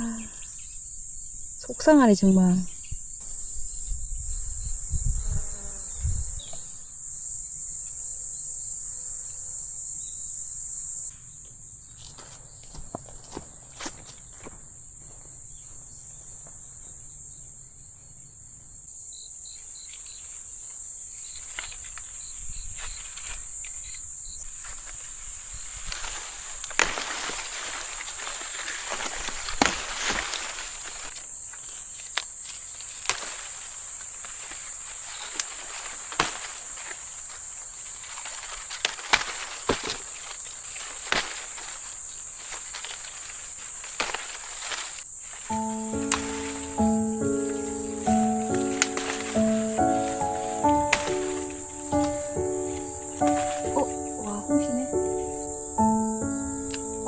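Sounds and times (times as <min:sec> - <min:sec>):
insects trilling: 0:00.0 - 0:57.0
footsteps: 0:11.4 - 0:17.0, 0:35.6 - 0:57.0
digging in soil: 0:25.8 - 0:57.0.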